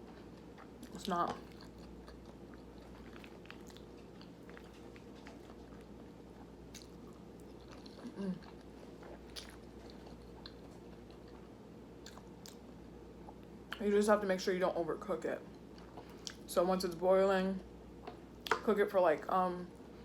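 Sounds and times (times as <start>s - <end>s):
person chewing food: 0.0s - 13.8s, 15.5s - 16.5s
low steady hum: 0.0s - 20.0s
short hummed voice sound: 8.0s - 8.4s.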